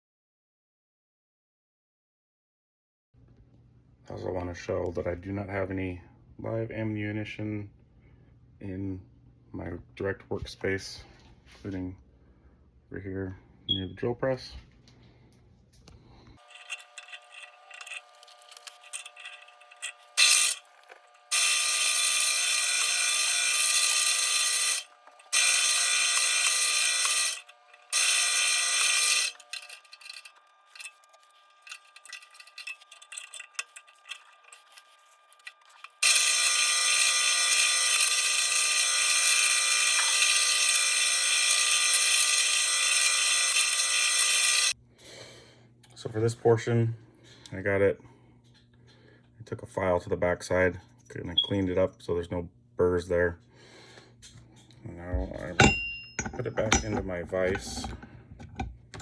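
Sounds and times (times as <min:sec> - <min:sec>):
handling clatter: 0:16.4 - 0:20.7, 0:55.2 - 0:59.0
drill press drilling into metal: 0:16.4 - 0:44.7.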